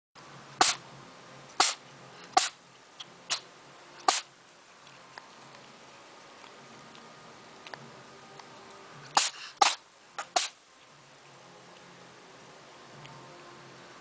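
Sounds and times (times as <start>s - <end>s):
cat sneezing: 0.6s - 0.8s, 1.6s - 2.6s, 3.3s - 4.3s, 9.1s - 10.6s.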